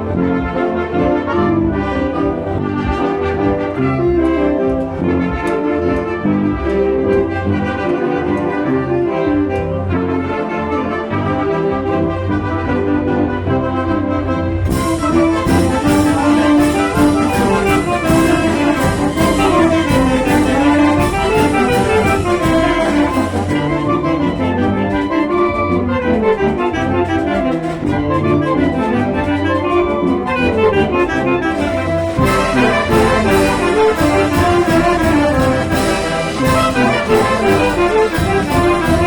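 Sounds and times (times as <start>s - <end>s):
brass band melody: 0.0s - 39.0s
percussion steady beat: 14.6s - 39.0s.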